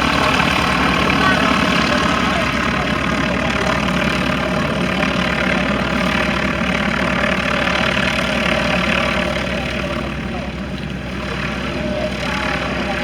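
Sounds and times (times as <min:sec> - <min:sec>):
light aircraft engine and propeller: 0:00.0 - 0:13.0.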